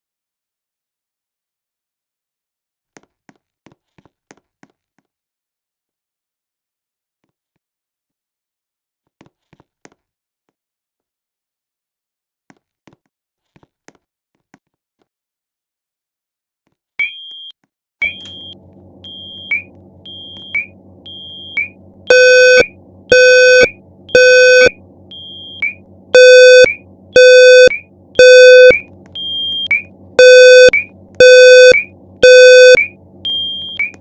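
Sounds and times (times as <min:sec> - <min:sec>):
fire alarm horn blasts: 0:17.1 - 0:34.0
low hum: 0:18.0 - 0:34.0
short high beep: 0:18.0 - 0:34.0.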